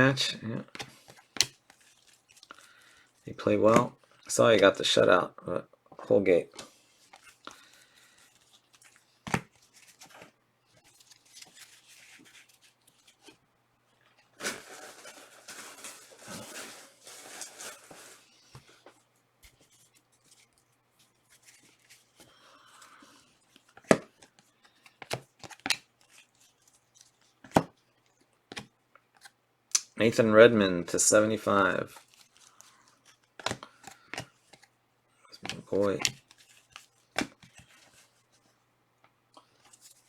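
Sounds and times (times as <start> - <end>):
foil wrapper tearing: 14.4 - 18.2.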